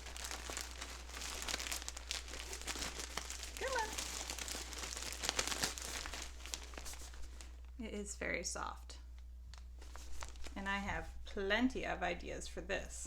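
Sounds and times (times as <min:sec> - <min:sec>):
packaging crinkling: 0:00.0 - 0:07.8, 0:09.5 - 0:10.7.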